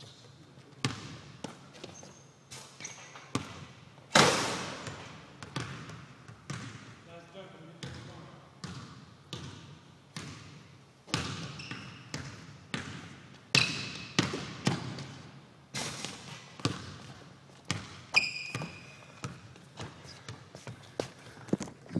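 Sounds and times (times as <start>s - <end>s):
short high squeaks: 1.9s - 3.3s, 18.2s - 19.2s.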